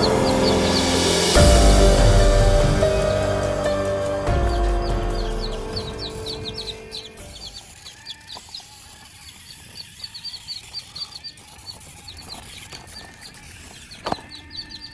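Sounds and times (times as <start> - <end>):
small birds chirping: 4.8 - 14.9.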